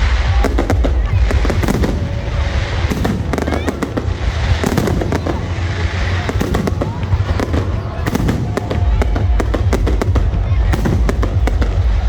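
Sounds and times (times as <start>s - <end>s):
continuous low rumble: 0.0s - 12.0s
fireworks popping and banging: 0.0s - 12.0s.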